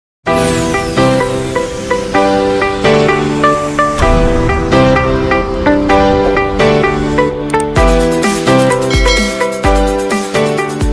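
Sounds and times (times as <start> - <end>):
deep bass hits: 4.0 - 7.3
plucked electronic melody: 8.8 - 10.4.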